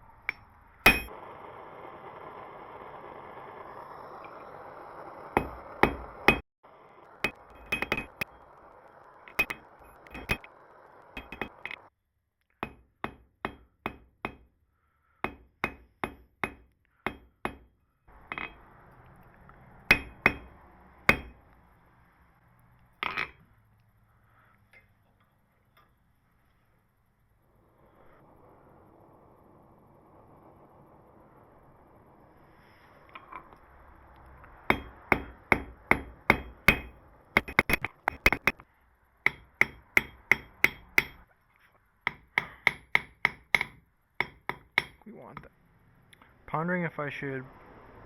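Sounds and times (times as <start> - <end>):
steady hiss: 0.0 - 11.9, 26.2 - 45.2
hammer striking metal on anvil: 0.3 - 1.1, 5.4 - 6.4, 7.2 - 8.3, 9.4 - 10.5, 11.2 - 11.8, 12.6 - 14.5, 15.2 - 18.7, 19.9 - 21.4, 34.7 - 38.6, 39.2 - 41.3, 42.1 - 45.5.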